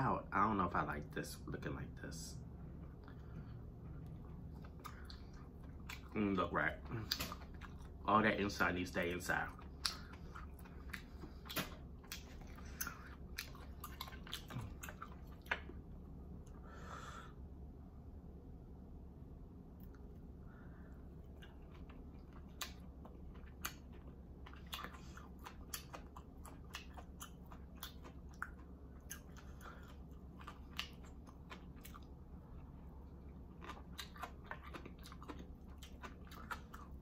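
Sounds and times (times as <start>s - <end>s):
chewing food: 2.6s - 16.6s, 19.8s - 37.0s
mouth clicks and crunches: 2.9s - 15.8s, 21.2s - 37.0s.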